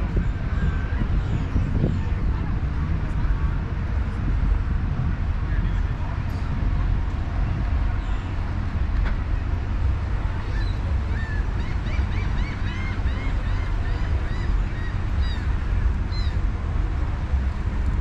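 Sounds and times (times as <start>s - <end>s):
steady low rumble: 0.0s - 18.0s
bird calls: 10.4s - 16.4s.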